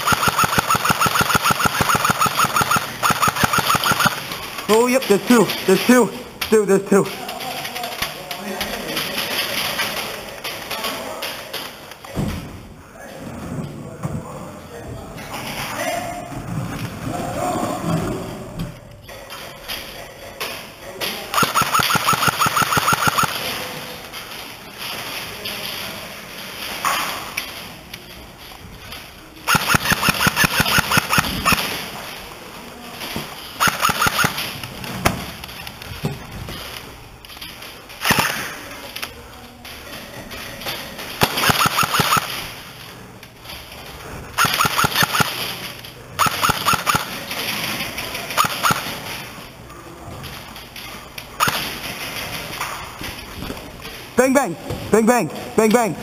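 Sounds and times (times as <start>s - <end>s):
airsoft rifle rapid shots: 0.0s - 4.3s, 21.3s - 23.4s, 29.4s - 31.7s, 33.6s - 34.5s, 38.0s - 38.5s, 41.2s - 42.4s, 44.4s - 45.5s, 46.2s - 47.2s, 48.4s - 49.0s, 51.4s - 51.7s.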